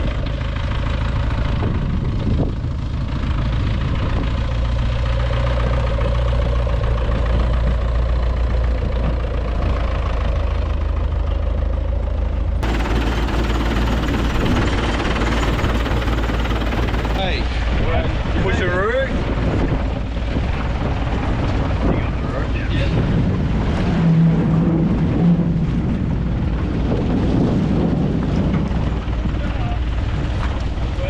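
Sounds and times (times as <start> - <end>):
motor running steadily: 0.0 - 23.6.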